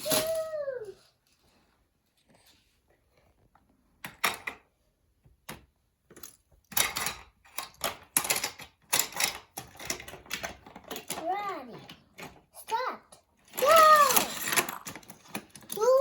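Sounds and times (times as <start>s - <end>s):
plastic toy cars rattling: 0.0s - 1.1s, 6.2s - 16.0s.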